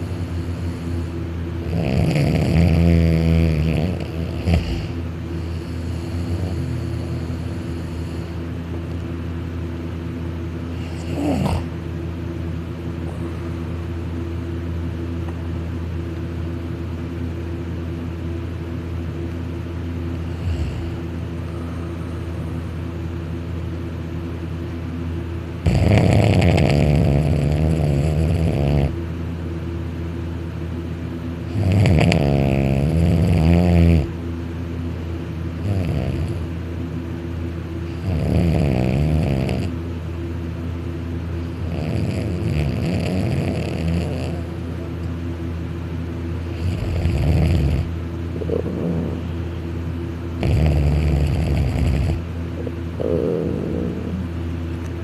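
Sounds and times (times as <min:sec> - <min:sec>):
steady low hum: 0:00.0 - 0:55.0
man snoring loudly: 0:01.6 - 0:08.3, 0:10.8 - 0:11.7, 0:20.3 - 0:21.1, 0:25.6 - 0:29.0, 0:31.5 - 0:34.1, 0:35.6 - 0:36.5, 0:37.9 - 0:39.8, 0:41.6 - 0:44.6, 0:46.5 - 0:49.5, 0:50.4 - 0:54.3.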